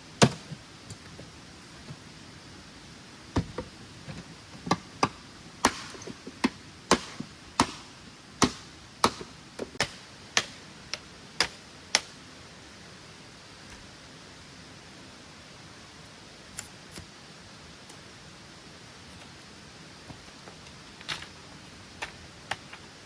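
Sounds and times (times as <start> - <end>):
sharp chopping strikes: 5.6 - 10.6.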